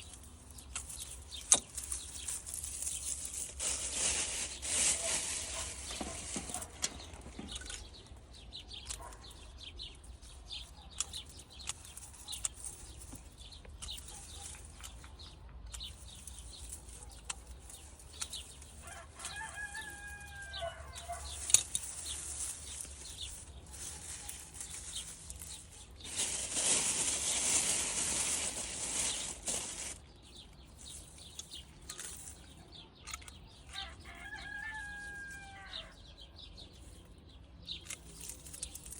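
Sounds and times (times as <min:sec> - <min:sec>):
leafy stems rustling: 0:00.0 - 0:08.2, 0:11.0 - 0:15.2, 0:15.8 - 0:35.9, 0:37.8 - 0:38.9
rooster crowing: 0:18.8 - 0:21.3, 0:33.7 - 0:36.0.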